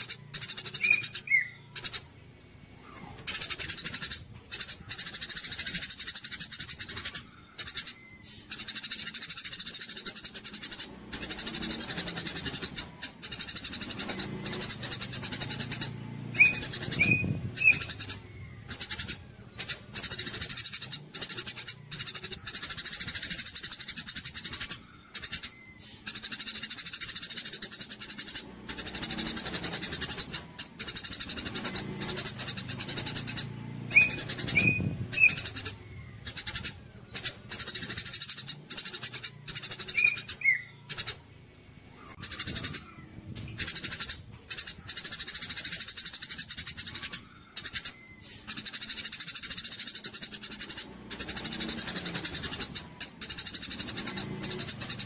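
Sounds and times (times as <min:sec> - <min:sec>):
songbird chattering trill: 0:00.0 - 0:55.0.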